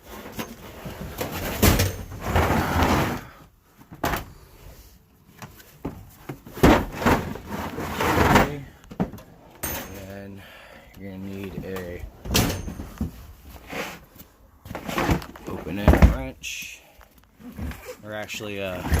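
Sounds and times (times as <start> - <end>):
toolbox drawer sliding: 0.0 - 3.3, 6.6 - 8.7, 18.8 - 19.0
metal tools clattering: 9.6 - 10.3, 12.3 - 13.2.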